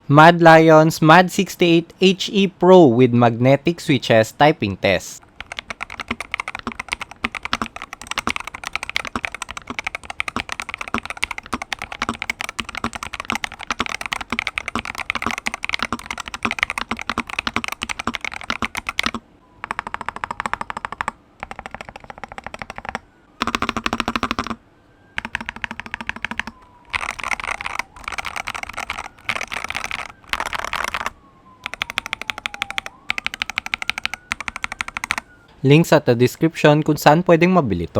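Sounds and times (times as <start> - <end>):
typing on a keyboard: 5.2 - 24.6, 25.2 - 35.3.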